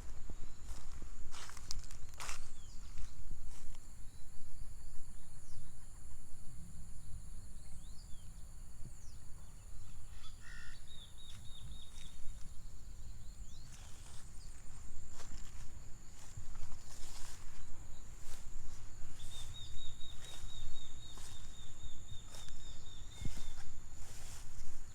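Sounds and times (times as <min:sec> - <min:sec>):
footsteps: 0:00.0 - 0:03.8, 0:13.7 - 0:24.9
bird chirps: 0:09.0 - 0:14.6, 0:19.2 - 0:24.4.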